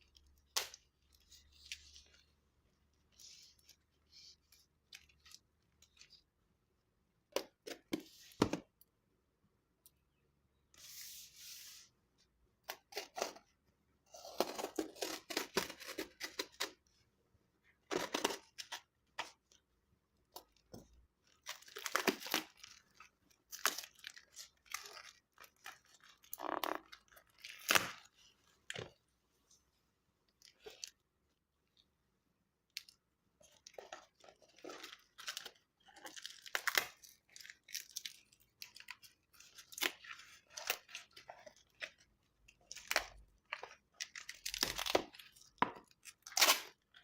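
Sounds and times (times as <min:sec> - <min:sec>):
packaging ripping and crinkling: 0:21.2 - 0:28.2, 0:33.4 - 0:47.0.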